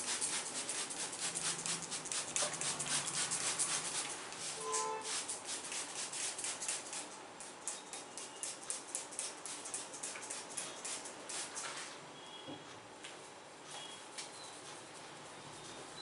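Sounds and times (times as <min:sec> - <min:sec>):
fingers rubbing hair and skin: 0:00.0 - 0:07.1, 0:07.7 - 0:11.6.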